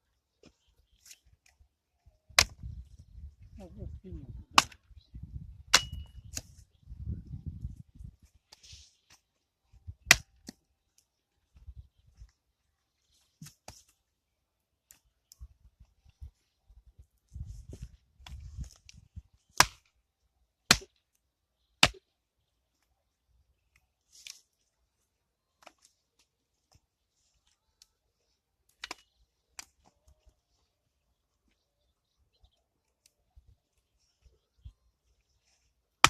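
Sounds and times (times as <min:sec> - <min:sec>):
axe striking firewood: 0:02.3 - 0:02.8, 0:04.6 - 0:04.9, 0:05.6 - 0:06.5, 0:10.0 - 0:10.6, 0:19.5 - 0:19.9, 0:20.6 - 0:21.0, 0:21.8 - 0:22.1, 0:28.8 - 0:29.7.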